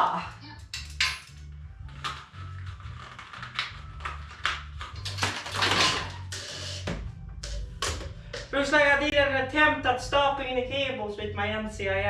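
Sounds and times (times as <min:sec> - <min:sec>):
cables scraping and rustling: 0:01.8 - 0:07.6.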